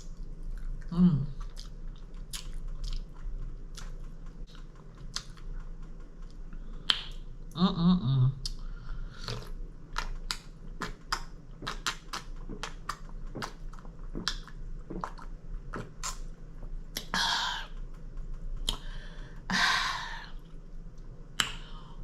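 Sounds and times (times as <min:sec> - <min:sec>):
crunchy chewing of fried food: 0:00.1 - 0:06.6, 0:08.5 - 0:17.1.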